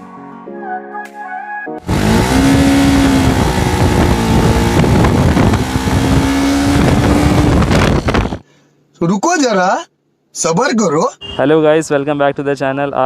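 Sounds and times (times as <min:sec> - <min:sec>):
motorcycle engine revving: 0:01.8 - 0:08.4.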